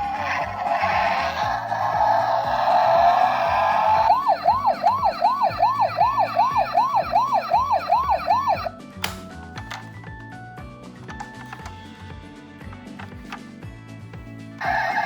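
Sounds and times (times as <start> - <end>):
toy electronic siren: 0.0 - 8.7, 14.6 - 15.0.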